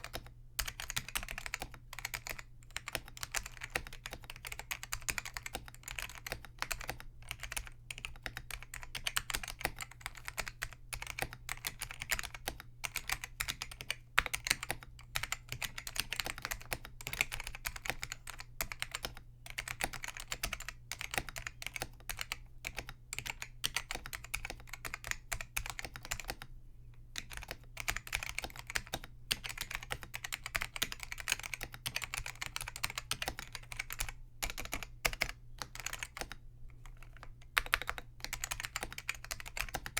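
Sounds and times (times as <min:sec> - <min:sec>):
fast keyboard typing: 0:00.0 - 0:26.5, 0:27.2 - 0:39.9.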